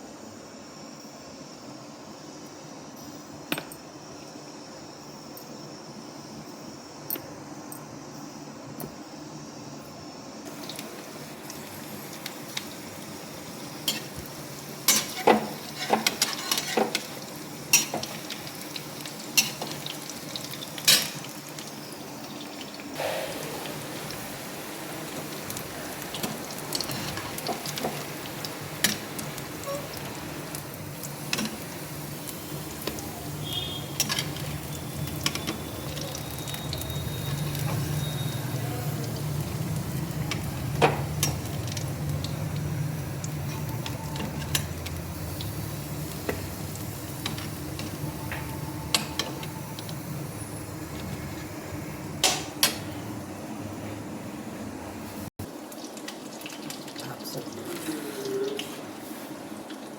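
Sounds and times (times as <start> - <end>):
food sizzling in hot oil: 10.4 - 53.9.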